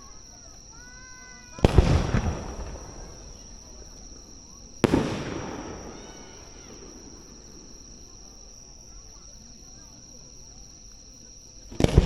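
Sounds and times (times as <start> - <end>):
firework boom: 1.6 - 8.6.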